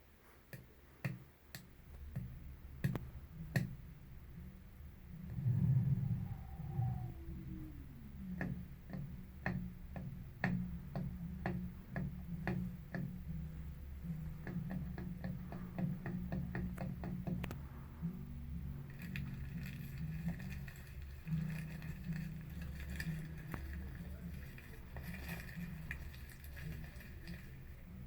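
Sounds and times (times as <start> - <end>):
steady low hum: 0.0 - 28.0
higher steady tone: 4.4 - 9.4.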